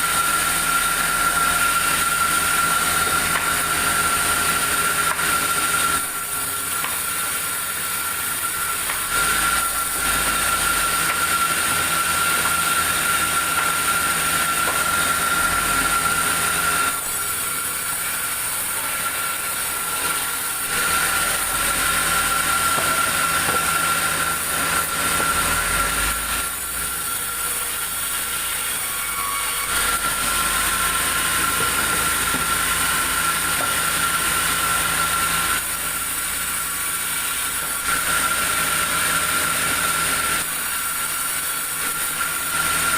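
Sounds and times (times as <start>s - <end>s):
sawmill saw whining: 0.0s - 42.9s.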